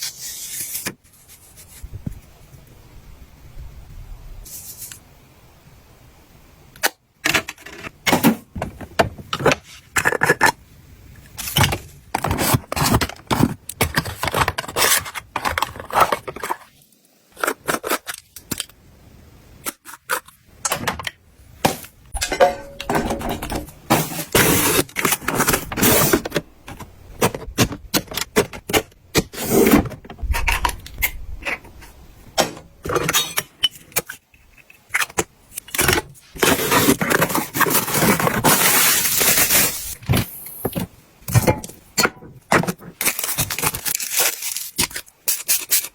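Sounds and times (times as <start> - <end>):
containers being handled: 21.7 - 41.8.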